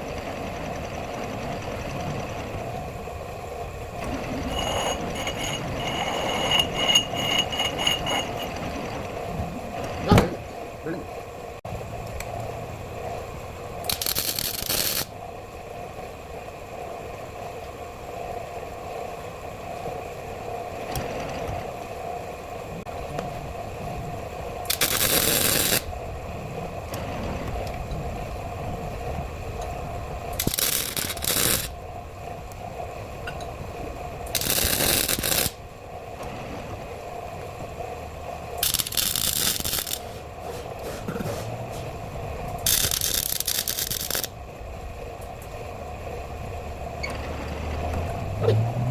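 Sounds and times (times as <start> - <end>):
steady mechanical hum: 0.0 - 48.9
metal tools scraping and rattling: 4.4 - 8.6
harsh bursts of noise: 34.3 - 35.6, 38.6 - 41.6, 42.6 - 44.3.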